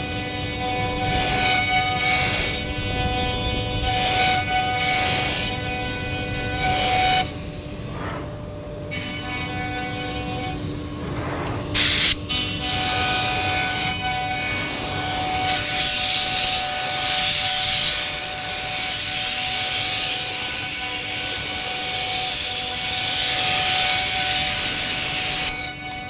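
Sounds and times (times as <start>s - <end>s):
hissing cutting noise: 4.8s - 13.4s.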